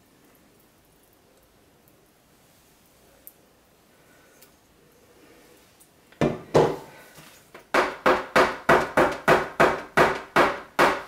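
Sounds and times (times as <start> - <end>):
hard knocks on a mold: 6.2 - 6.9, 7.7 - 11.0.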